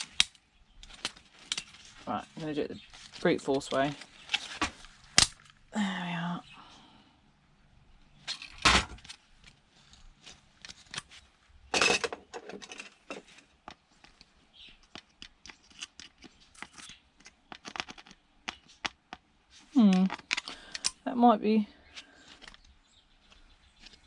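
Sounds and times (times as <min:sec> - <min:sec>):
plastic parts clicking and rattling: 0:00.0 - 0:05.6, 0:08.2 - 0:21.0, 0:21.9 - 0:24.0
plastic cracking: 0:00.0 - 0:05.7, 0:08.2 - 0:19.3, 0:19.9 - 0:21.0.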